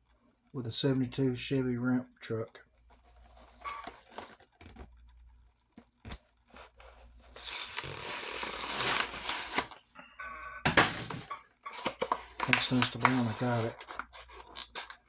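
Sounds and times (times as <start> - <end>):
blister package tearing: 7.4 - 9.8
package handling clicks: 10.7 - 15.0.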